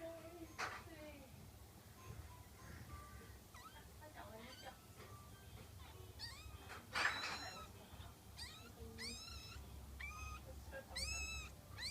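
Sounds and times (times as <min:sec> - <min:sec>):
kitten mewing: 0:03.5 - 0:04.8, 0:05.8 - 0:11.9.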